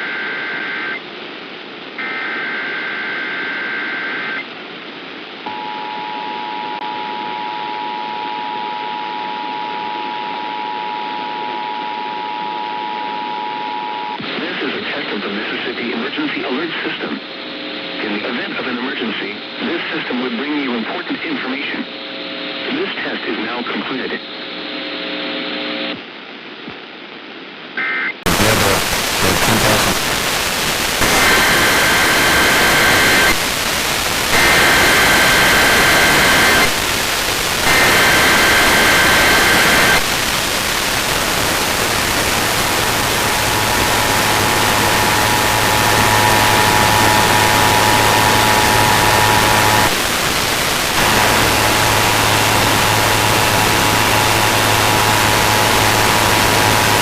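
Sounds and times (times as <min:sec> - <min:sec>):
heavy radio static: 0:11.2 - 0:26.1, 0:27.8 - 0:57.0
warbling data tones: 0:34.3 - 0:57.0.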